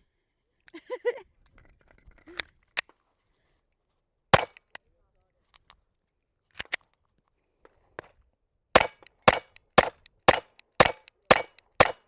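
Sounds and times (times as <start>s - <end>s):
pistol shots: 4.4s - 4.8s, 8.8s - 12.0s.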